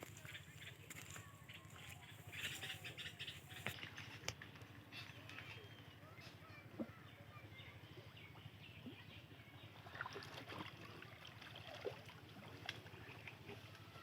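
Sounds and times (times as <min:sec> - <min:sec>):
birds chirping faintly: 0:00.0 - 0:03.9, 0:04.8 - 0:09.9
small water splashes: 0:03.7 - 0:05.6, 0:09.6 - 0:14.0
shallow water sloshing: 0:09.6 - 0:14.0.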